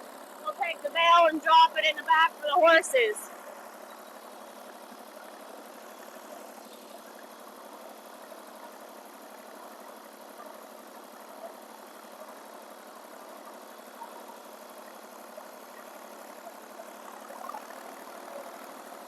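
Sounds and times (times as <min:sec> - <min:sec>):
tractor engine running: 0:00.0 - 0:03.8.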